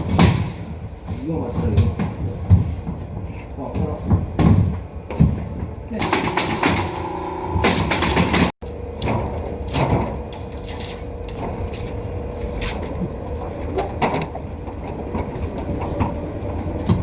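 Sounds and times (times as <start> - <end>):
sharp knocks and clicks: 6.0 - 8.6
steady hum: 6.0 - 9.0.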